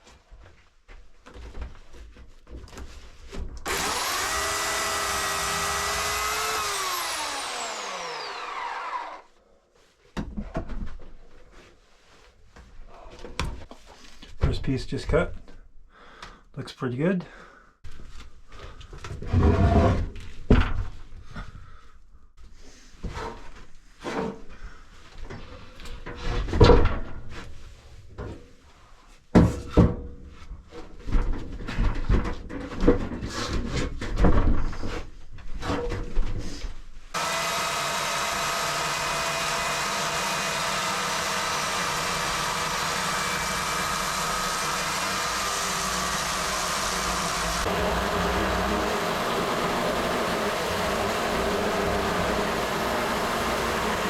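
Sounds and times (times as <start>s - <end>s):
chainsaw cutting log: 3.6s - 9.3s, 37.1s - 54.0s.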